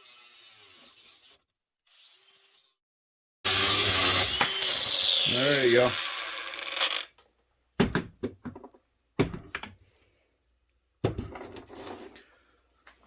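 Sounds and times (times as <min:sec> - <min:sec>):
angle grinder cutting bolt: 0:03.5 - 0:07.1
knocks and thunks: 0:07.8 - 0:09.6.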